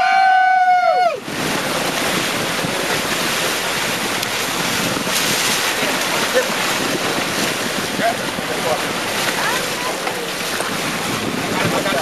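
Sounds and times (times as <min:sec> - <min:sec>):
person whooping: 0:00.0 - 0:01.2
wind and sea rushing: 0:00.0 - 0:12.0
wind buffeting microphone: 0:00.0 - 0:12.0.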